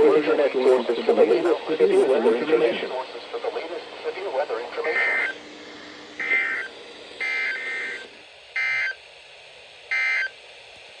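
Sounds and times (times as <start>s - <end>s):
faint radio hiss: 0.0s - 11.0s
buzzy two-tone data bleeps: 5.0s - 5.4s, 6.2s - 9.0s, 9.9s - 10.3s.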